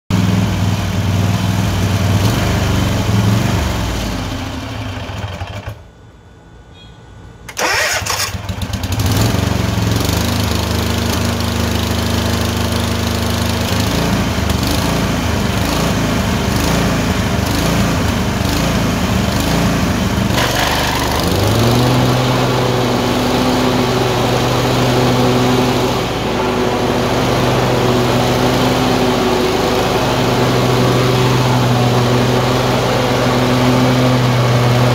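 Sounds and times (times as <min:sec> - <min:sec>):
engine surging and misfiring: 0:07.5 - 0:34.9.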